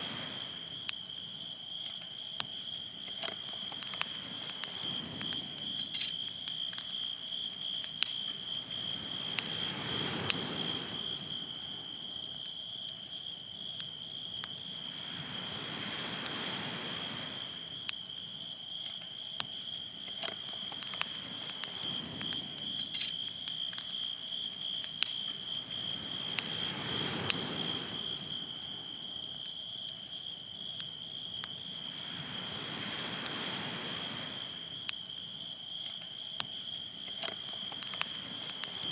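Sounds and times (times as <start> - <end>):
high insect trill: 0.0 - 38.9
sharp ticks: 19.4 - 25.6.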